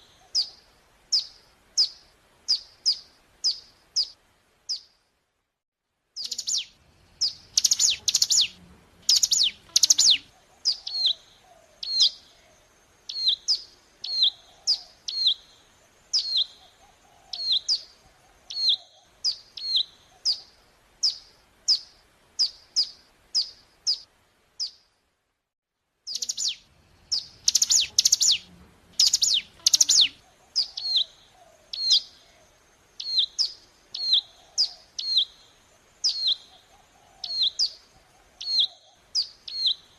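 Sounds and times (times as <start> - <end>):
bird chirping: 0.0 - 5.0, 6.2 - 24.9, 26.0 - 39.9.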